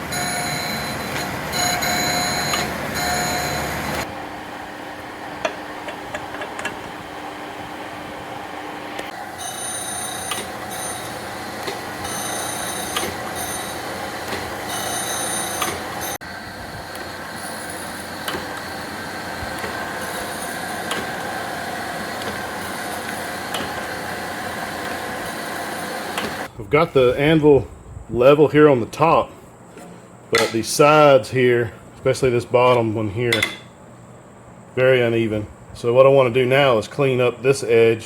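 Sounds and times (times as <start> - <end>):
high ringing tones: 0.0 - 4.0, 9.3 - 13.8, 14.6 - 16.2
surface grinder running: 0.0 - 4.1, 9.1 - 26.5.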